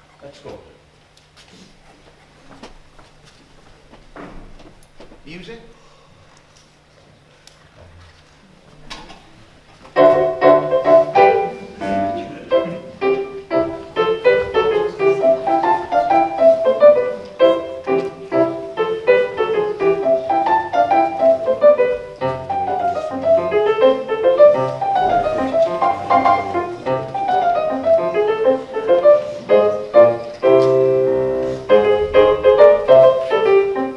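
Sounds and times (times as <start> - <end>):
piano-led music: 9.9 - 33.9.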